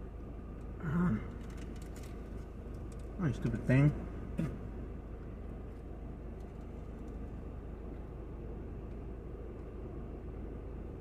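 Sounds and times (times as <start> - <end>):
low background rumble: 0.0 - 11.0.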